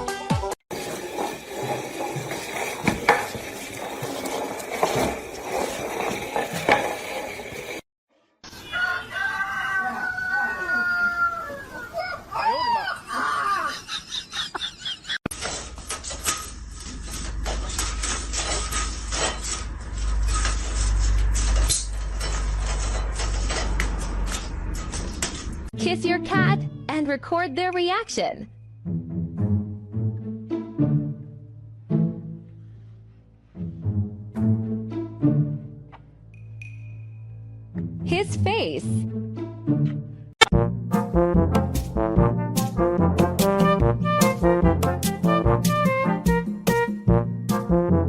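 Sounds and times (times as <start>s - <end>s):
clattering and knocking: 0.7s - 7.8s
household scraping and rustling: 0.7s - 7.8s, 15.3s - 25.7s.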